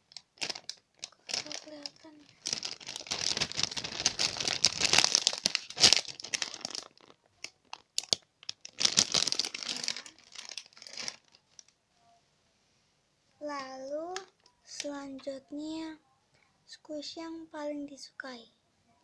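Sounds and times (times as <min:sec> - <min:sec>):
plastic packaging crinkling: 0:00.0 - 0:11.8.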